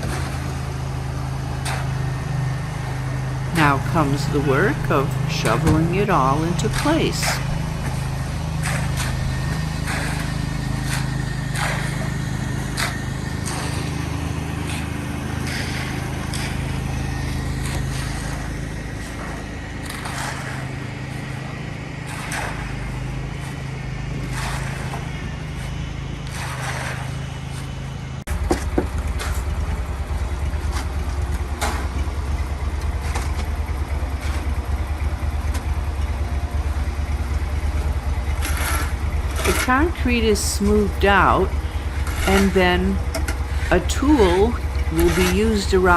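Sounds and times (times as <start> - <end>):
engine drone: 0.0 - 45.9
shovels scraping wet concrete: 1.6 - 2.2, 2.8 - 28.0, 38.3 - 45.9.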